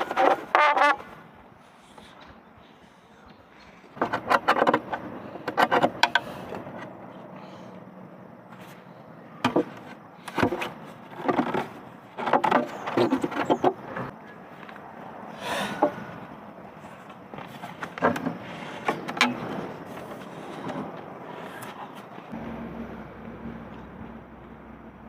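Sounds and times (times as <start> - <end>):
building materials clattering: 9.4 - 14.1.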